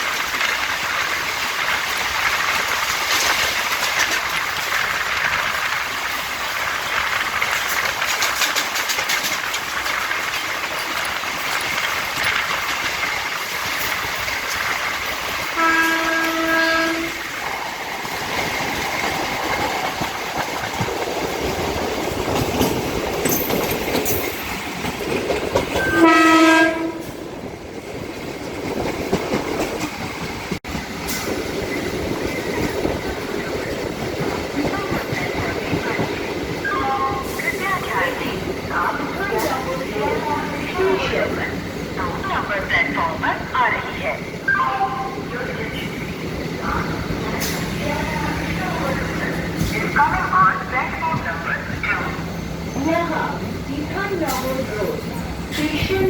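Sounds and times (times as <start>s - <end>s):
train wheels clattering on rails: 0.0s - 44.3s, 45.2s - 56.0s
two-tone train horn: 15.5s - 17.3s, 25.8s - 27.2s.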